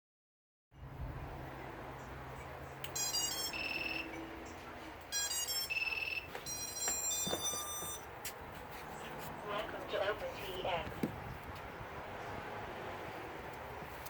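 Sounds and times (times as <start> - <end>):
electronic beep tones from motors: 2.9 - 4.3, 5.1 - 8.0.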